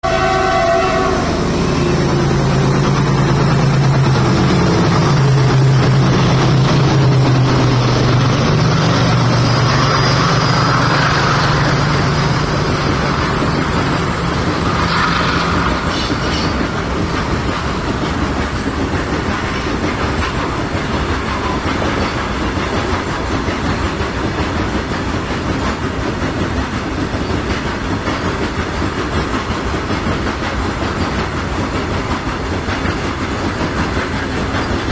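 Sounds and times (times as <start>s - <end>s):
diesel locomotive passing: 0.0s - 34.9s.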